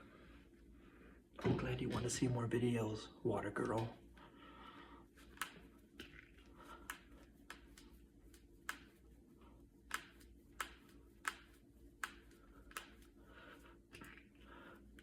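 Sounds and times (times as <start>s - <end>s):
knuckles cracking: 9.8s - 13.2s, 13.9s - 14.4s.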